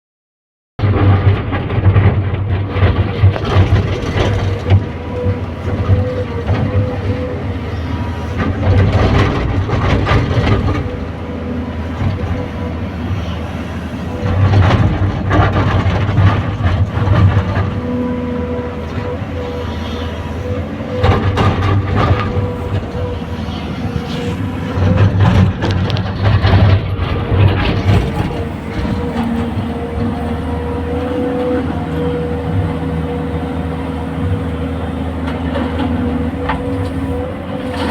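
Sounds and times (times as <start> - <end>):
diesel engine running: 1.3 - 37.9
hydraulic whine: 2.8 - 37.9.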